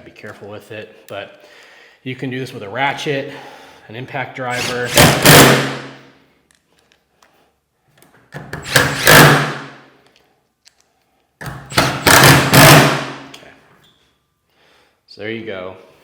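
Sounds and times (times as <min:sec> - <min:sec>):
impact wrench driving screws: 0:04.5 - 0:05.9, 0:08.4 - 0:09.8, 0:11.4 - 0:13.4.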